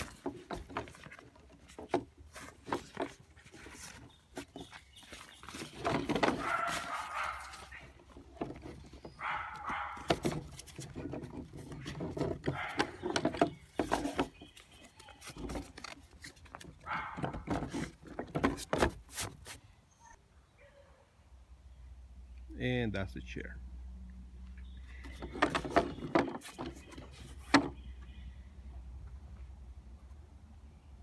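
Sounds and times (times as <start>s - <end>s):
rustling handling: 0.0s - 19.7s, 24.8s - 28.2s.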